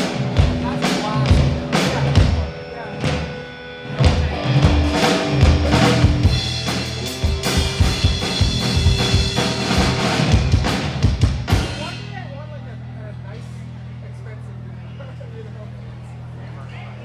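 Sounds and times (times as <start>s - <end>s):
drum kit playing loud: 0.0s - 12.3s.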